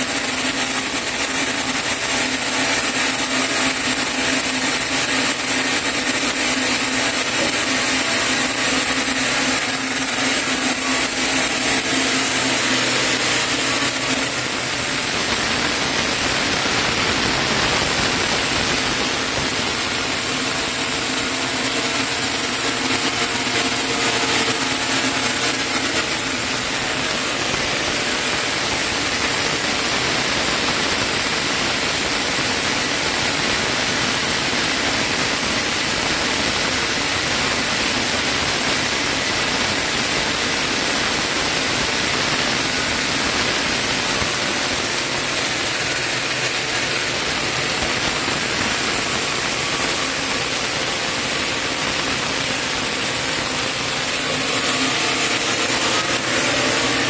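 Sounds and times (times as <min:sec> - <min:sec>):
sawmill saw cutting log: 0:00.0 - 0:30.4, 0:41.6 - 0:57.0
steady low hum: 0:00.0 - 0:30.6.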